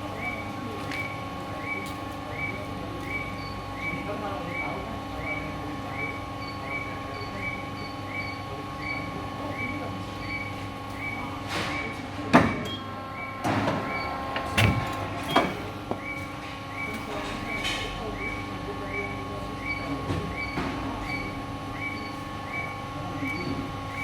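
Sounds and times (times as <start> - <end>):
paper-cutting machine humming: 0.0 - 20.3.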